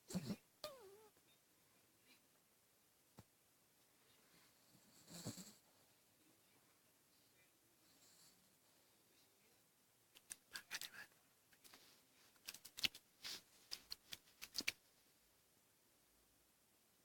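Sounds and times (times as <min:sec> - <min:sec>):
dog clicks and rustles: 0:12.4 - 0:14.8.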